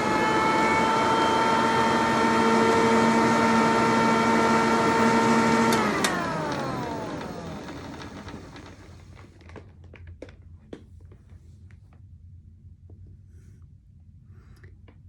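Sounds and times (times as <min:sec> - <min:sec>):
vacuum cleaner motor whining: 0:00.0 - 0:09.6
vacuum switch click: 0:05.7 - 0:06.8.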